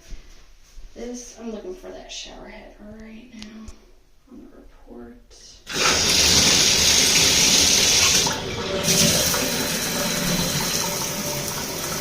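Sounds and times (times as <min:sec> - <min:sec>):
shower water spraying: 0:05.7 - 0:12.0.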